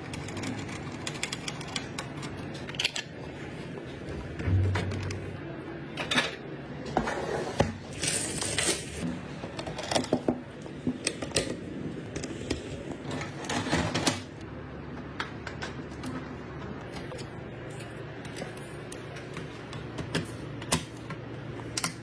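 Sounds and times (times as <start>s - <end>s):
computer parts clicking and knocking: 4.4s - 5.4s.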